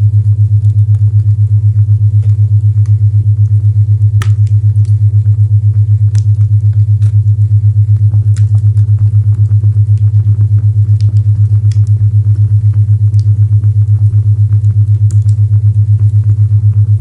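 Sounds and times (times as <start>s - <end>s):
pulsing low hum: 0.0s - 17.0s
fireplace crackle: 1.8s - 13.3s, 14.0s - 15.4s.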